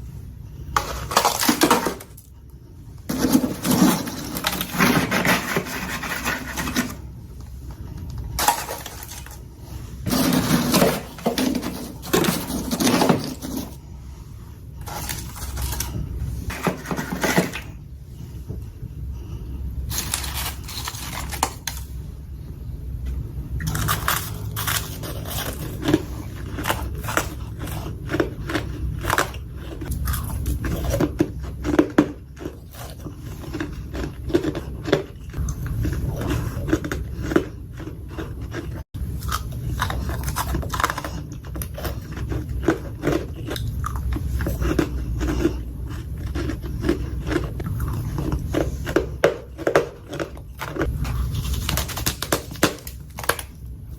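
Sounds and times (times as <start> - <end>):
low steady hum: 0.0 - 53.9
crunchy chewing of frost: 19.9 - 22.0, 23.6 - 53.6.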